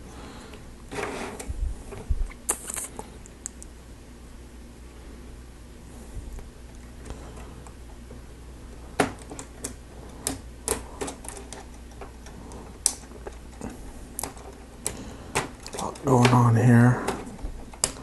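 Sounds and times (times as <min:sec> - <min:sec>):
plastic parts clicking together: 0:17.1 - 0:18.0.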